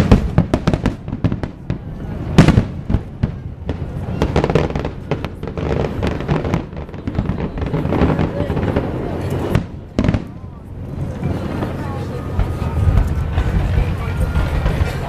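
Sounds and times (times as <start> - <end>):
fireworks crackling pops: 0.0 - 10.4
fireworks bang: 0.0 - 15.0.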